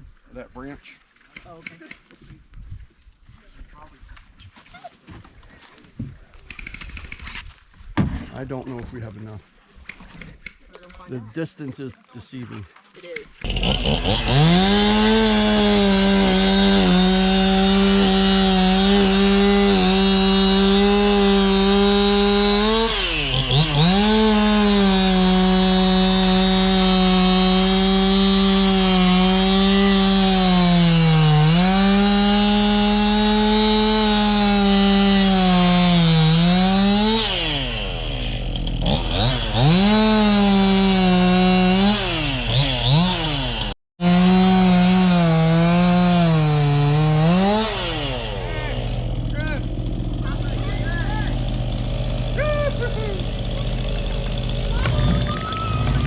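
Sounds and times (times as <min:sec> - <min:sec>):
chainsaw running at high throttle: 0:13.4 - 0:56.0.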